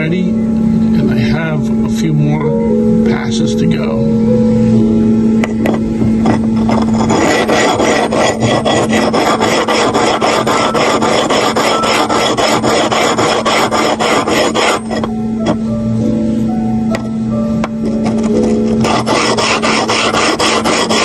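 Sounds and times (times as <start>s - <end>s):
blade scraping on sharpening plate: 5.6s - 15.6s, 17.8s - 21.0s.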